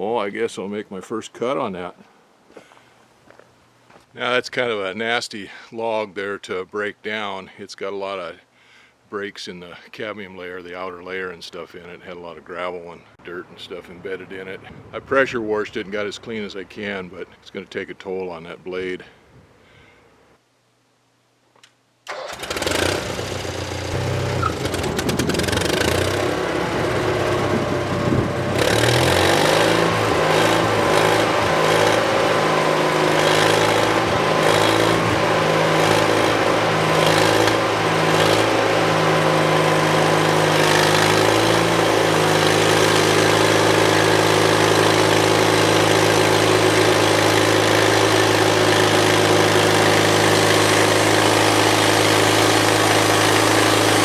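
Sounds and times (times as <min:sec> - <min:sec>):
gasoline engine running: 0:22.1 - 0:54.0.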